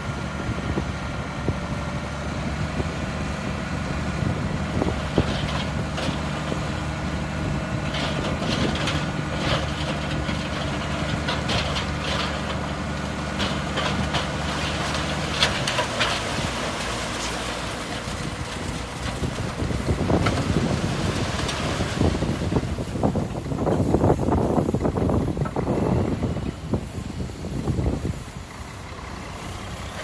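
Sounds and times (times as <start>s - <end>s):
diesel engine idling: 0.0s - 30.0s
rattles and clanks: 5.0s - 6.8s, 7.7s - 22.6s.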